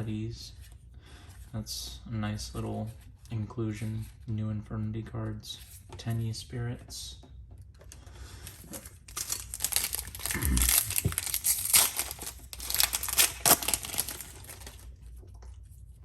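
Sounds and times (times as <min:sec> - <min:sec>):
foil wrapper crinkling and tearing: 0:08.5 - 0:14.9.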